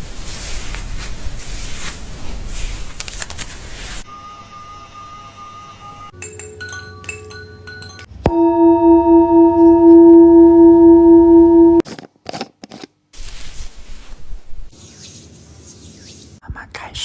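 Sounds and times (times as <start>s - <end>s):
singing bowl ringing: 6.7s - 11.8s
short chime notes: 8.3s - 11.8s.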